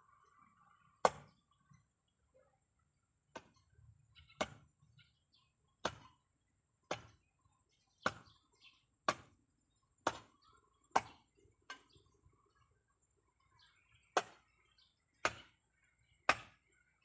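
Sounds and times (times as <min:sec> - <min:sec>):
faint bird chirps: 0:00.0 - 0:17.0
hand tool chopping: 0:01.0 - 0:01.3, 0:03.3 - 0:03.6, 0:04.4 - 0:04.7, 0:05.8 - 0:06.2, 0:06.9 - 0:07.2, 0:08.0 - 0:08.4, 0:09.0 - 0:09.4, 0:10.0 - 0:11.3, 0:14.1 - 0:14.5, 0:15.2 - 0:15.6, 0:16.2 - 0:16.7.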